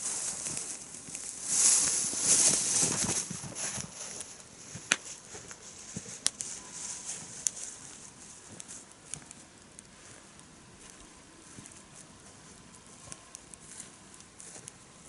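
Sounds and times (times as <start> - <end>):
sharp pops of fire: 0.0 - 5.2, 5.9 - 9.9
campfire crackling: 0.0 - 15.0
campfire hissing rush: 0.0 - 15.0.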